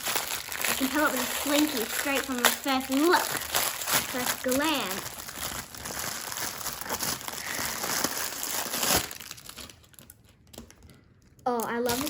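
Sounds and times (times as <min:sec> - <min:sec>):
plastic packaging crinkling: 0:00.0 - 0:12.0.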